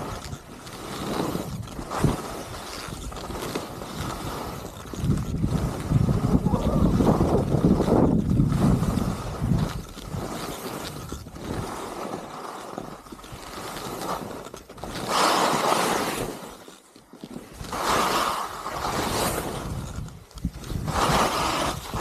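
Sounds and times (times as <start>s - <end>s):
skis scraping through snow: 0.0s - 22.0s
wind rushing over microphone: 4.0s - 11.7s, 17.6s - 22.0s.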